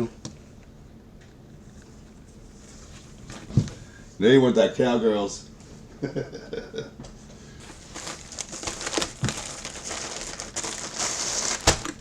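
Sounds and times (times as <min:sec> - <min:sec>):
packaging crinkling: 0:07.6 - 0:12.0.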